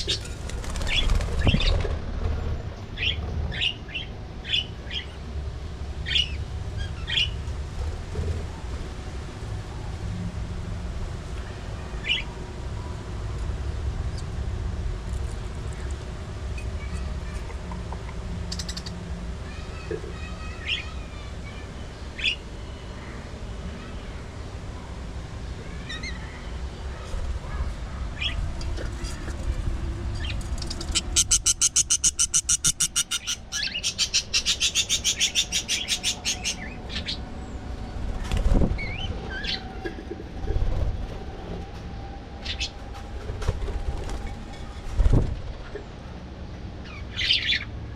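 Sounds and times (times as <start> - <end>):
budgerigars chirping: 30.8 - 37.2.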